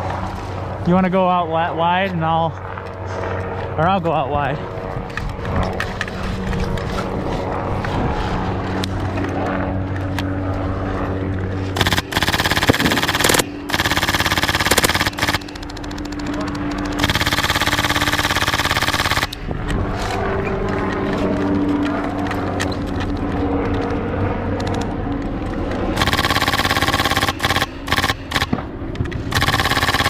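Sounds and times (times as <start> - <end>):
steady low rumble: 0.0 - 29.7
airsoft gun full-auto bursts: 11.8 - 19.4, 26.0 - 28.7, 29.3 - 30.0.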